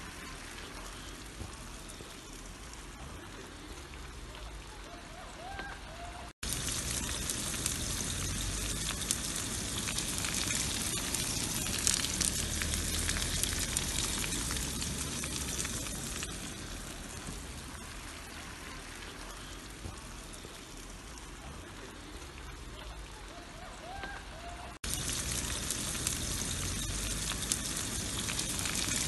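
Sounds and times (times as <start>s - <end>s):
sausage sizzling in frying pan: 6.4s - 21.4s, 24.8s - 29.0s.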